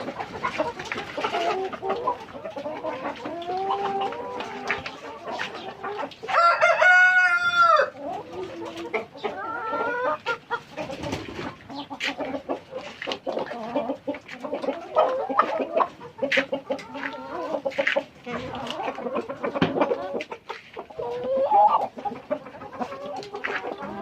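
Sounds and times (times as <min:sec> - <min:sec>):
chickens clucking: 0:00.0 - 0:24.0
rooster crowing: 0:06.3 - 0:08.0.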